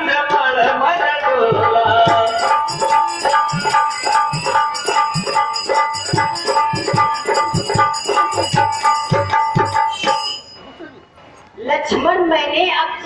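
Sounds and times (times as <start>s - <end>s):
fast drum beat: 1.5s - 10.5s
jingling percussion: 1.5s - 11.0s
repeated melody note: 2.1s - 10.8s.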